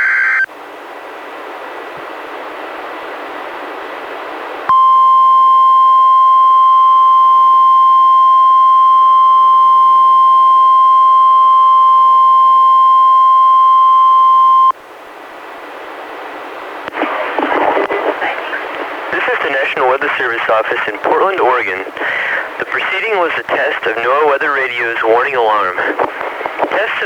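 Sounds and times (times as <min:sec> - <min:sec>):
radio hiss: 0:16.8 - 0:27.0.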